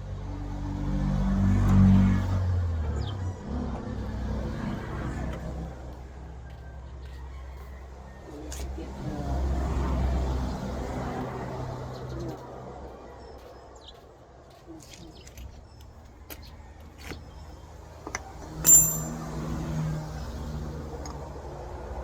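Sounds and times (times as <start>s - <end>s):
sharp metallic strike ringing: 18.6s - 19.3s.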